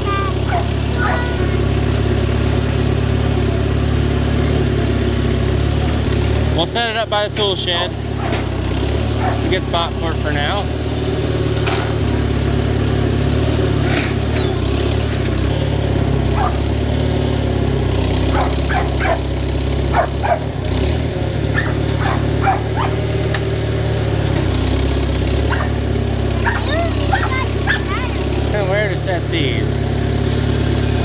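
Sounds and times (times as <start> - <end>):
short high yelps: 0.0 - 1.7, 16.3 - 16.6, 18.4 - 19.3, 21.6 - 23.0, 25.5 - 25.8, 26.4 - 28.3
tractor engine running: 0.0 - 31.0.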